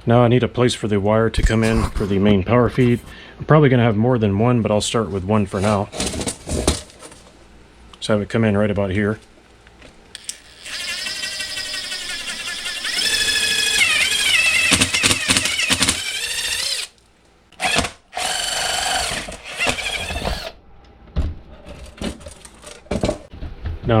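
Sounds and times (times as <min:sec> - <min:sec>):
power drill boring: 0:10.2 - 0:17.0, 0:17.6 - 0:20.5.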